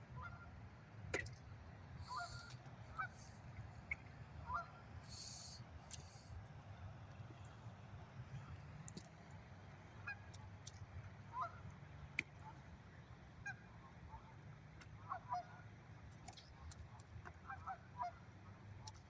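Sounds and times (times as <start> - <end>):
honking calls: 2.0 - 3.3.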